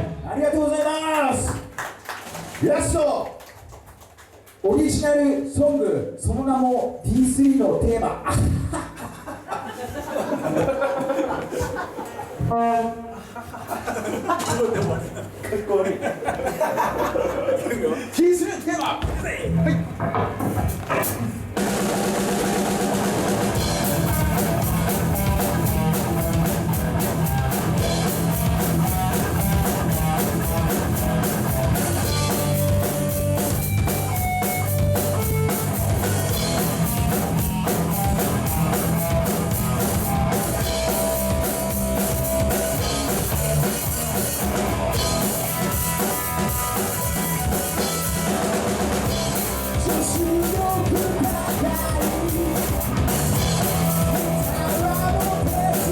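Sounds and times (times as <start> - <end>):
electric guitar: 19.5 - 55.9
drum kit beat: 20.4 - 55.9
low bass notes: 22.8 - 55.9.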